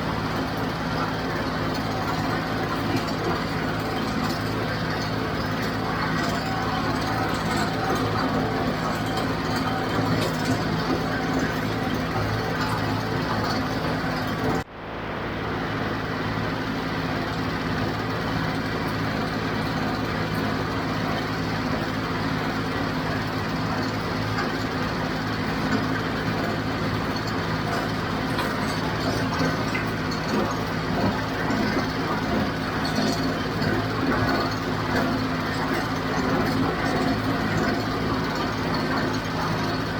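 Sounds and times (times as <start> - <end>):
baler machinery running: 0.0 - 39.9
tractor diesel engine running: 0.0 - 39.9.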